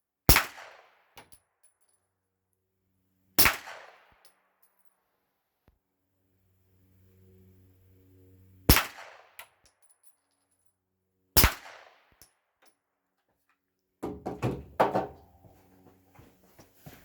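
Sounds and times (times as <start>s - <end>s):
suppressed pistol shots: 11.4s - 11.8s
quiet knocks: 14.0s - 16.3s.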